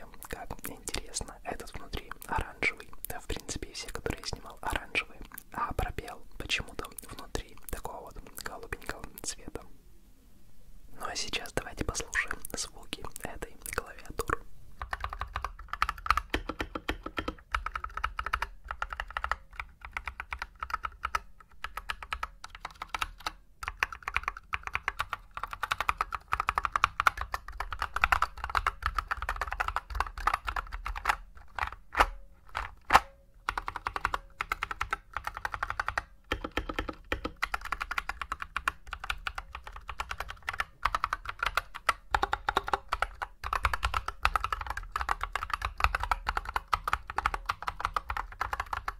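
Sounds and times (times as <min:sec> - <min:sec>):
mechanical keyboard typing: 0:13.8 - 0:48.9.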